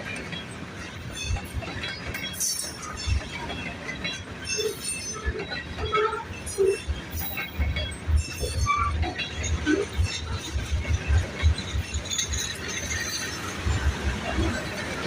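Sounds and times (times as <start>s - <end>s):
train wheels clacking over rail joints: 0.0s - 15.0s
high wheel squeal: 4.4s - 14.0s.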